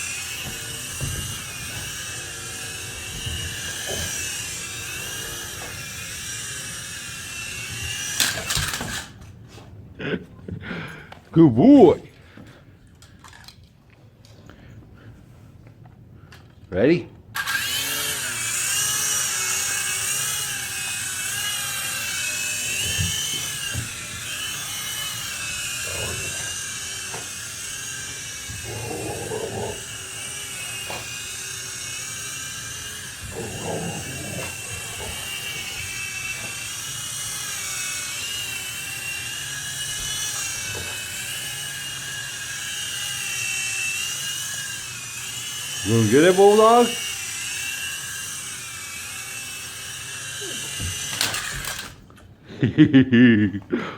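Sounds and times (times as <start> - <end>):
toy helicopter rotor motors whining: 0.0 - 9.3, 17.3 - 52.2
thumps and scuffling: 0.1 - 2.2.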